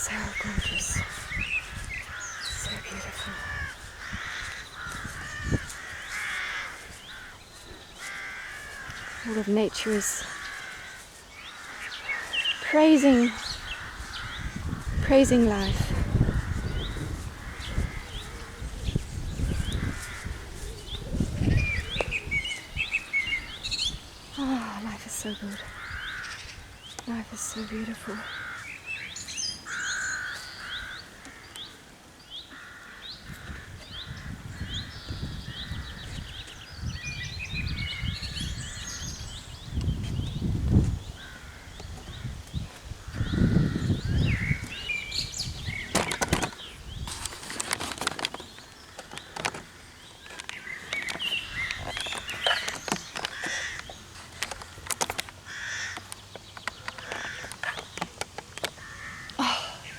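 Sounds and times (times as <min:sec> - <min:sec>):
rustling: 0:00.0 - 0:27.5, 0:44.6 - 0:59.2
songbird chirping: 0:00.0 - 0:59.9
crow cawing: 0:01.0 - 0:18.7, 0:19.5 - 0:20.8, 0:25.6 - 0:26.6, 0:27.8 - 0:31.8, 0:32.5 - 0:34.4, 0:52.4 - 0:53.9, 0:54.8 - 0:56.2, 0:56.8 - 0:57.8, 0:58.7 - 0:59.9.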